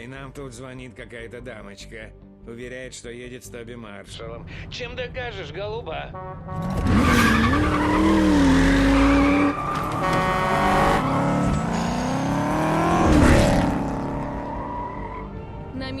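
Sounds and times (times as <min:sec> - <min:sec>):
car engine revving: 0:06.4 - 0:15.2
tires squealing: 0:06.6 - 0:15.4.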